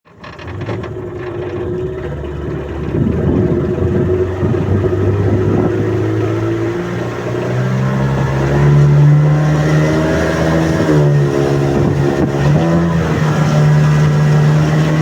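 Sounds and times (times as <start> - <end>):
motorboat engine running: 0.0 - 15.0.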